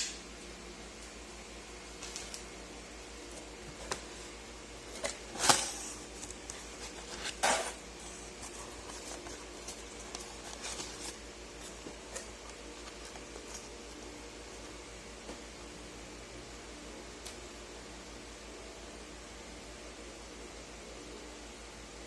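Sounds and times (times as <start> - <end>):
packaging scraping rustles: 4.9 - 14.6.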